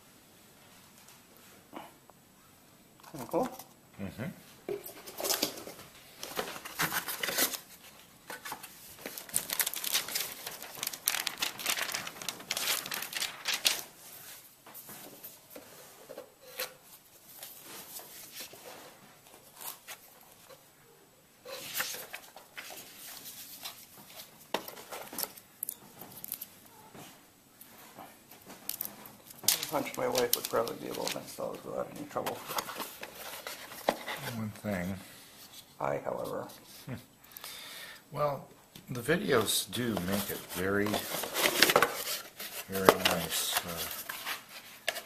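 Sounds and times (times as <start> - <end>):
packaging crinkling and tearing: 8.4 - 14.0, 28.7 - 31.6, 40.0 - 45.0.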